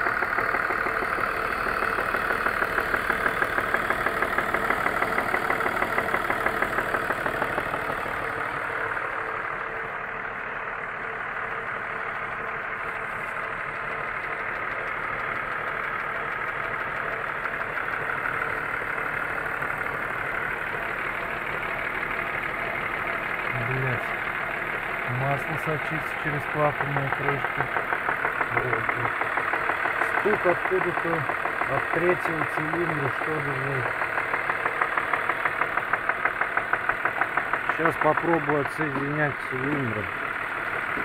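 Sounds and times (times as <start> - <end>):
car engine idling with knock: 0.0 - 41.0.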